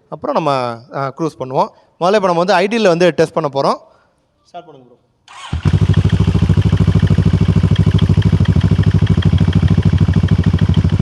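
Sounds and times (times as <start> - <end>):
motorcycle engine starting and idling: 5.3 - 11.0.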